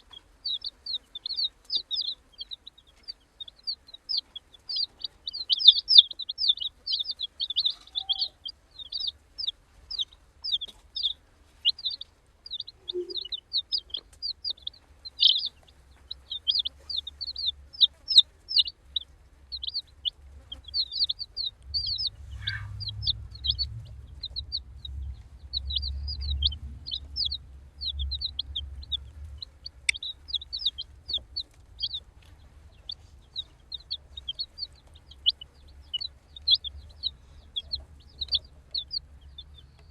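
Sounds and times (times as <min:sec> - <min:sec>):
baby chicks peeping: 0:00.0 - 0:39.9
low rumble: 0:18.8 - 0:39.9.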